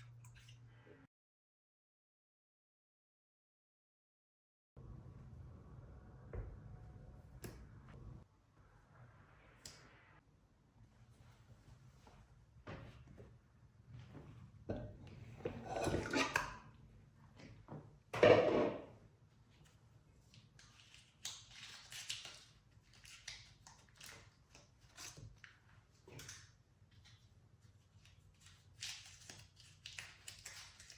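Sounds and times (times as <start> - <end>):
kitchen knocks and rustles: 17.5 - 19.0.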